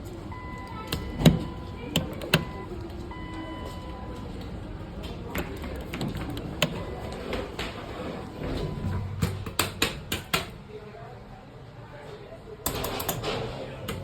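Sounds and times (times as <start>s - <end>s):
elevator low rumble: 0.0s - 9.5s.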